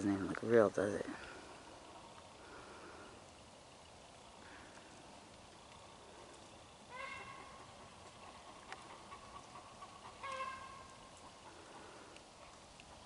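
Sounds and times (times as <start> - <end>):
chicken calling: 6.9 - 11.8.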